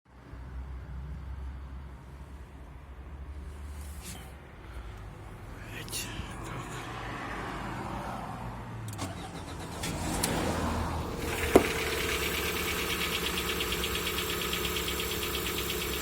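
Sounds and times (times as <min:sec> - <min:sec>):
car engine starting and idling: 0:08.8 - 0:16.0
engine ticking knock: 0:11.2 - 0:16.0.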